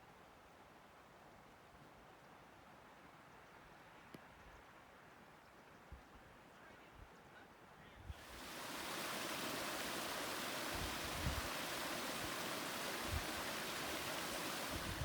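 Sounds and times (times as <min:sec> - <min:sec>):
rushing running water: 0:08.2 - 0:15.0.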